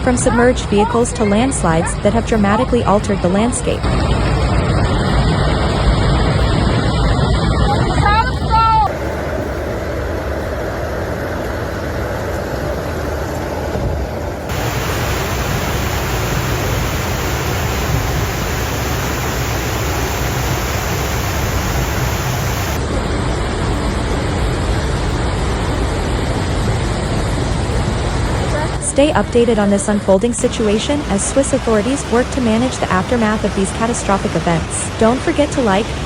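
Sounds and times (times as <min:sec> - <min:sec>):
loud rushing noise: 0:03.8 - 0:28.6.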